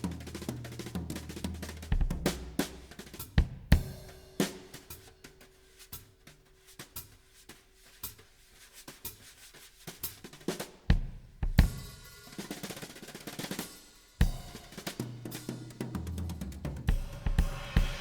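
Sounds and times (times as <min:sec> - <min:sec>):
drum-heavy music: 0:14.2 - 0:18.0
heavy bass drum thumps: 0:16.8 - 0:18.0.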